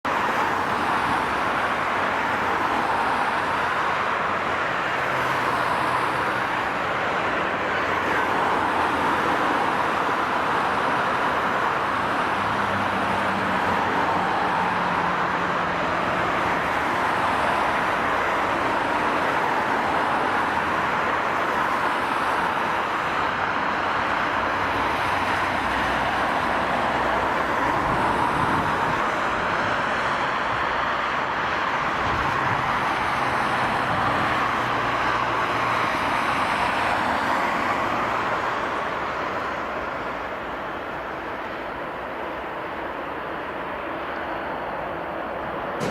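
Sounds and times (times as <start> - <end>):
jet engines at low thrust: 0.0 - 45.9.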